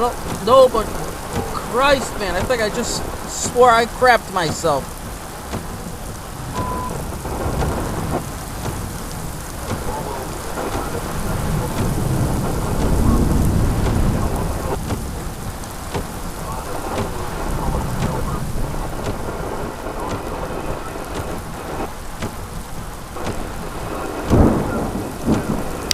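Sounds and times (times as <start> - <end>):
heavy rain falling: 0.0 - 25.9
thunder rumbling: 0.0 - 25.9.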